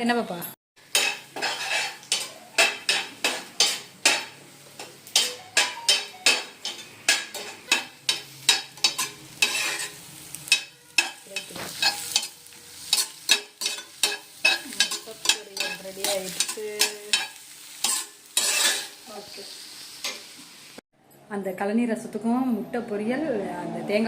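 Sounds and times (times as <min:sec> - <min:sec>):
spatula scraping a frying pan: 0:00.8 - 0:19.0
stir-fry sizzling: 0:00.8 - 0:20.8.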